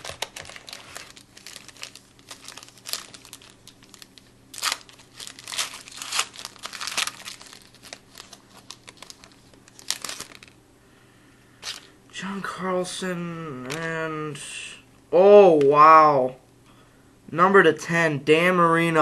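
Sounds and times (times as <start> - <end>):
card pack wrapper crinkling: 0.0 - 10.6, 11.6 - 11.9.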